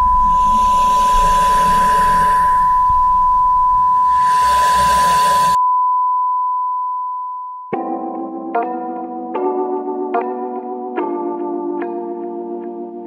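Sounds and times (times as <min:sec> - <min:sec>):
steady electronic alert beep: 0:00.0 - 0:05.6.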